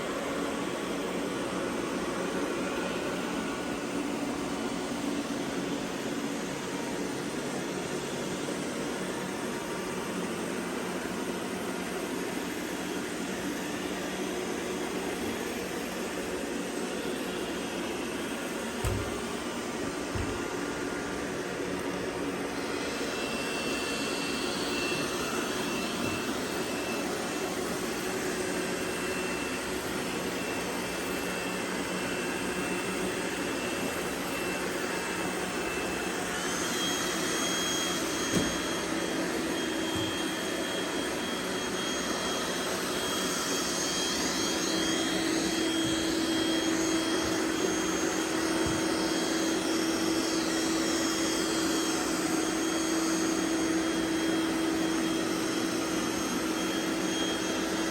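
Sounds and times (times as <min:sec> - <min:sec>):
robot vacuums whirring: 0:18.4 - 0:26.9, 0:35.2 - 0:51.4
short knock: 0:18.8 - 0:19.4.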